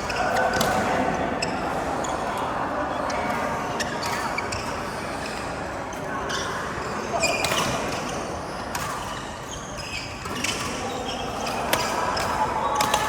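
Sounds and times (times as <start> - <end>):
shoes squeaking on court floor: 0.0 - 13.0
racket hitting shuttlecock: 8.7 - 9.1.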